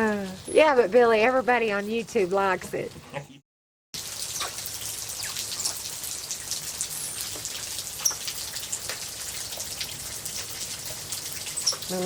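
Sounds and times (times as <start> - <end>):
drops dripping close by: 4.0 - 12.0
steady rain falling: 4.0 - 12.0.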